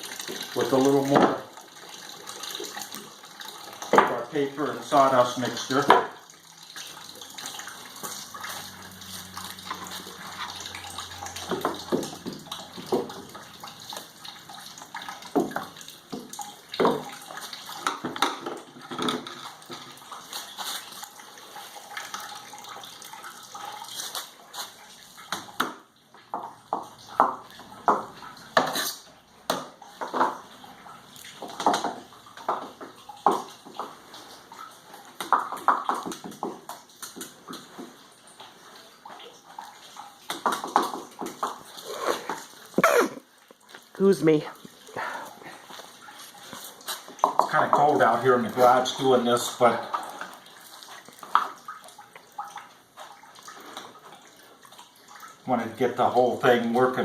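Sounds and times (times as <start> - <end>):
water sloshing and splashing: 0.0 - 57.0
wet pulp being scooped and packed: 20.2 - 22.0.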